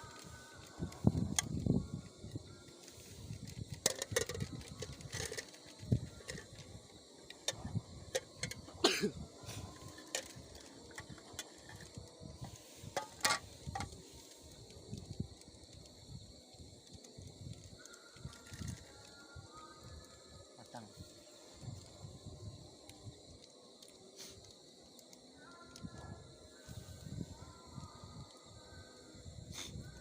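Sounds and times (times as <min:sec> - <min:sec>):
camp cooking gear clicking and knocking: 0:02.8 - 0:14.0.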